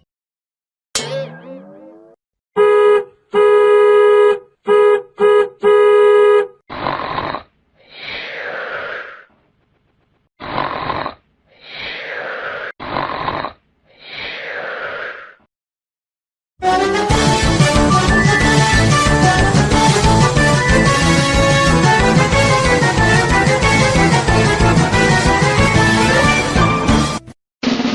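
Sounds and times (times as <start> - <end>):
cartoon snore with whistle: 6.7 - 9.3, 10.4 - 15.5.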